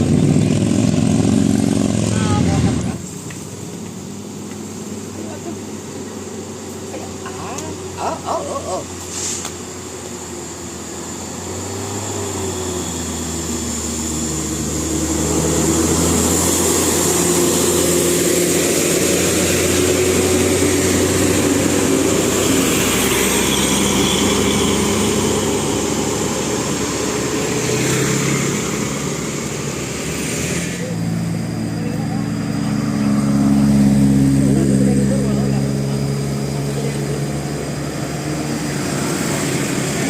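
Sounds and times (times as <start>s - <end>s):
bus engine running: 0.0s - 40.0s.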